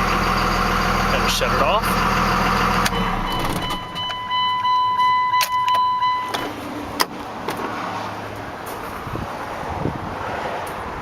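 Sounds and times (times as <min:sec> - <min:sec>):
electronic warning tone: 0:02.9 - 0:06.5.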